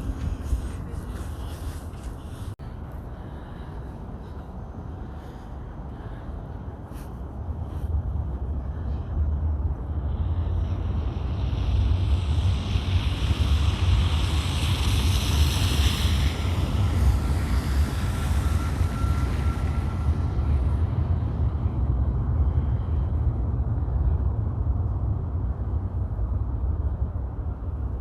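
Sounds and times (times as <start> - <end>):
wind buffeting microphone: 0.0 - 28.0
broad wind hiss: 9.5 - 23.7.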